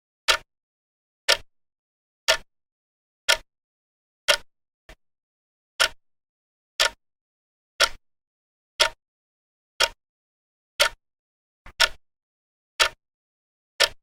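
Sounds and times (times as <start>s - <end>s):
mechanical clock ticking: 0.3s - 0.5s, 1.3s - 1.5s, 2.3s - 2.5s, 3.3s - 3.5s, 4.3s - 4.5s, 5.8s - 6.0s, 6.8s - 7.0s, 7.8s - 8.0s, 8.8s - 9.0s, 9.8s - 10.0s, 10.8s - 11.0s, 11.7s - 12.0s, 12.8s - 13.0s, 13.8s - 14.0s.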